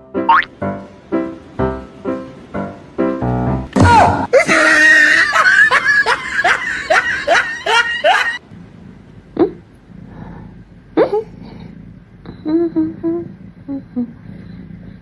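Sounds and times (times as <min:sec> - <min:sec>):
short cry: 0:03.7 - 0:05.4
person laughing hard: 0:03.8 - 0:08.4.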